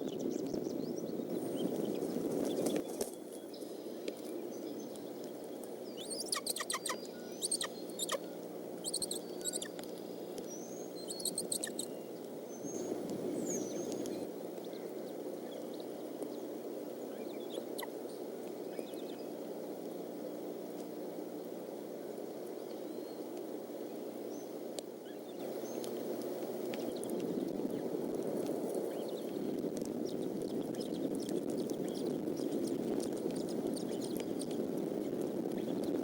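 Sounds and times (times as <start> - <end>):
steady rain hiss: 0.0 - 36.0
high bird chirps: 5.9 - 8.2, 8.8 - 9.8, 10.5 - 14.2.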